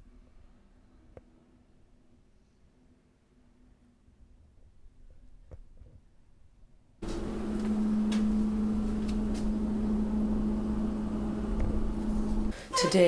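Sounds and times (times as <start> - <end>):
loud mechanical hum: 7.0 - 12.5.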